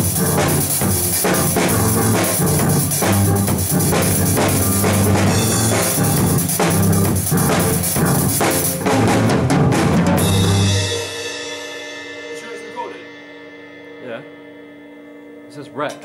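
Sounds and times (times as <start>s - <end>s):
live band music: 0.0s - 11.2s
drum kit beat: 0.0s - 14.4s.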